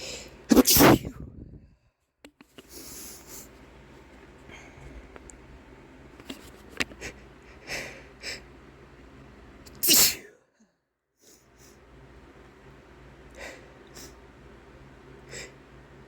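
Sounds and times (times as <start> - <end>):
man sneezing: 0.5 - 1.2, 9.8 - 10.3.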